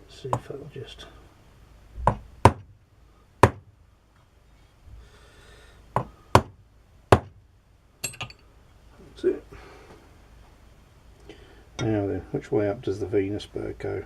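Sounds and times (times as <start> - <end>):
sharp knocks of parts clipping: 2.0 - 2.7.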